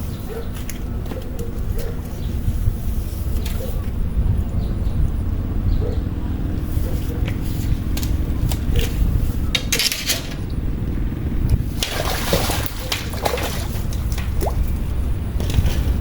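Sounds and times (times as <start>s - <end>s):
steady low rumble: 1.6s - 9.7s, 10.3s - 16.0s
water splashing: 11.7s - 15.0s.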